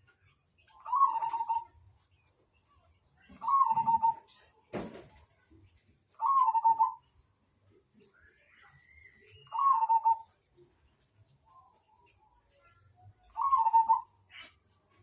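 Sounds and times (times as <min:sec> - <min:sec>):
dove cooing: 0:00.8 - 0:01.7, 0:03.4 - 0:04.3, 0:06.2 - 0:07.0, 0:09.5 - 0:10.4, 0:13.3 - 0:14.1.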